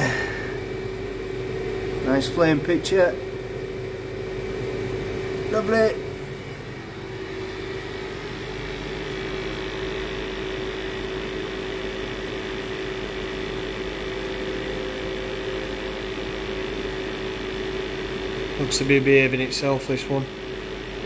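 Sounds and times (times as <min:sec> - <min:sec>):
water heater burner and fan: 0:00.0 - 0:21.0.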